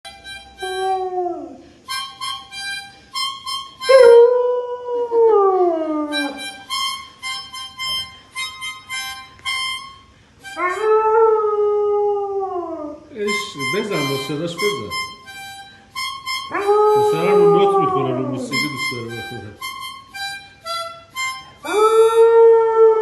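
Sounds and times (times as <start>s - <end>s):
harmonica playing march tune: 0.1s - 1.1s, 1.8s - 4.2s, 6.1s - 11.0s, 13.1s - 22.3s
dog howling: 0.6s - 1.6s, 3.8s - 6.5s, 10.6s - 13.0s, 16.5s - 18.6s, 21.7s - 23.0s.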